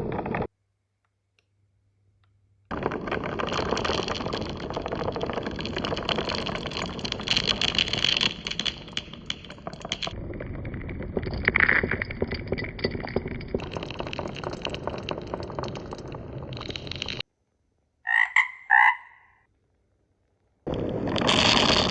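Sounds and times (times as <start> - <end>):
marbles rolling and clattering: 0.0 - 0.5, 2.7 - 17.2, 20.7 - 21.9.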